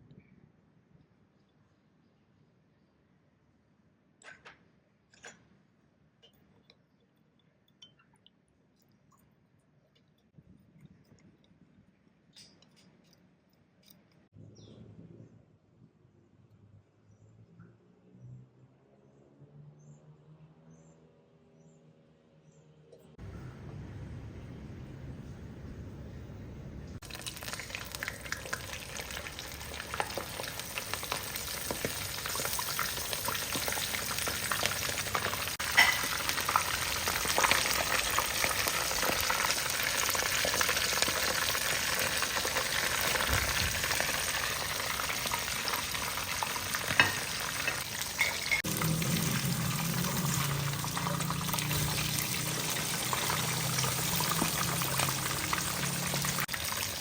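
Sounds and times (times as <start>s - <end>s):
oil sizzling and crackling: 27.0s - 57.0s.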